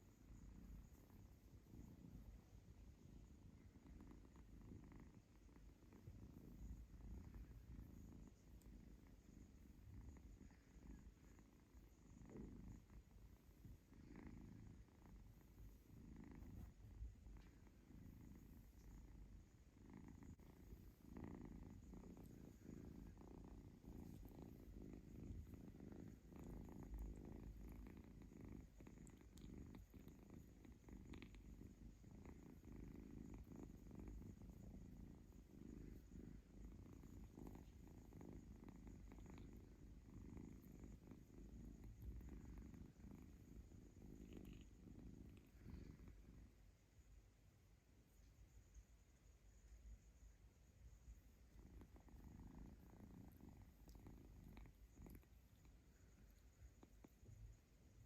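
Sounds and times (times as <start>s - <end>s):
kitten purring: 0.0s - 58.0s.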